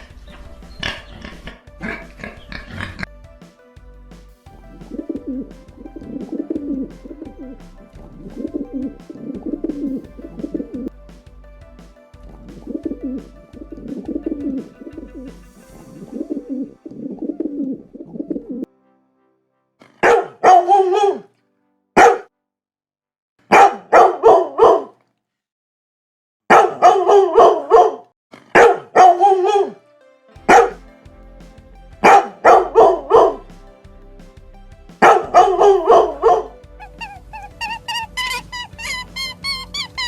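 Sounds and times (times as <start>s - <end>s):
background music: 0.0s - 22.1s, 29.0s - 40.0s
dog barking: 20.0s - 21.2s, 22.0s - 22.3s, 23.5s - 24.9s, 26.5s - 29.6s.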